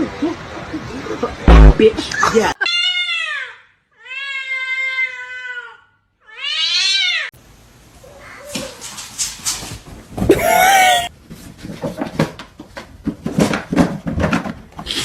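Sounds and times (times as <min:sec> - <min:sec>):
cat meowing: 0:10.3 - 0:11.1.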